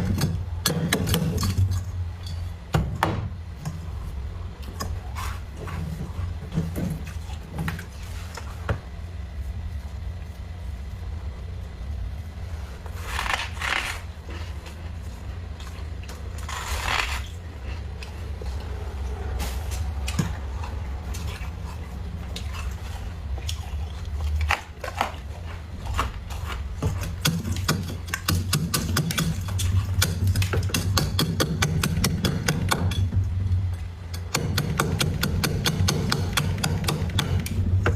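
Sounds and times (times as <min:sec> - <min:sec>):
steady low hum: 0:00.0 - 0:37.9
frost being scraped: 0:12.5 - 0:15.4, 0:16.3 - 0:19.8.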